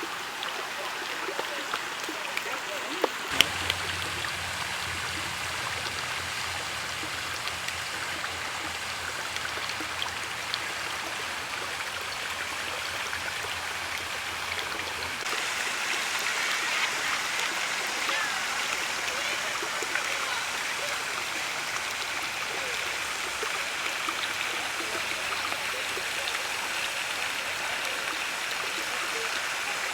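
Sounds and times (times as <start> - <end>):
canal water rushing: 0.0 - 29.9
low hum: 3.3 - 12.1.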